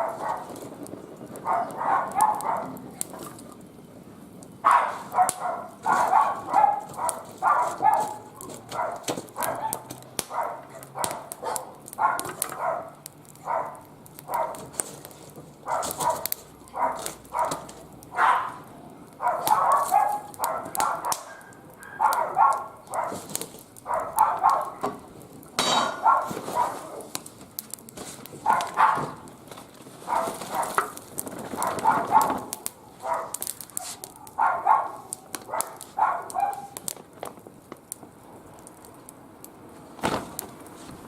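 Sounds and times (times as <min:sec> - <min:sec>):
dog barking: 0:00.0 - 0:00.6, 0:01.4 - 0:02.8, 0:04.6 - 0:14.7, 0:15.6 - 0:24.9, 0:25.9 - 0:27.1, 0:28.4 - 0:29.2, 0:30.0 - 0:30.8, 0:31.6 - 0:36.8
wood fire crackling and popping: 0:00.0 - 0:41.0.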